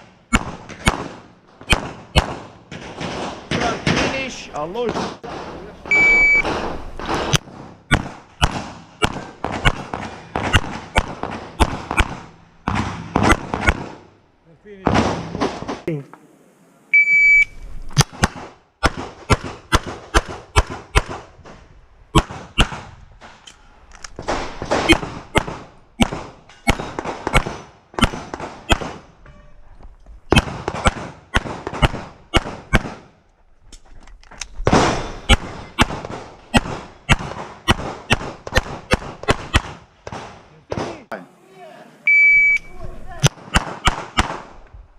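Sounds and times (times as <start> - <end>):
rapid pistol shots: 0.3 - 4.1, 6.4 - 14.1, 18.0 - 21.3, 22.2 - 22.9, 24.2 - 29.1, 30.3 - 33.1, 34.6 - 40.8, 43.2 - 44.6
shot timer beep: 5.9 - 6.4, 17.0 - 17.5, 42.1 - 42.7.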